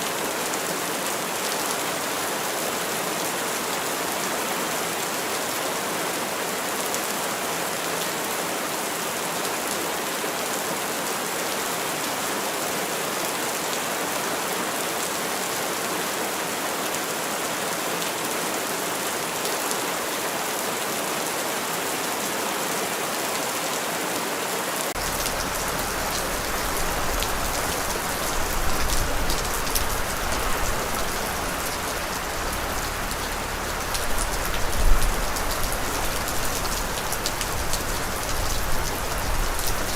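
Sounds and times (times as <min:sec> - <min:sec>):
steady rain falling: 0:00.0 - 0:39.9
deep low rumble: 0:25.0 - 0:39.9.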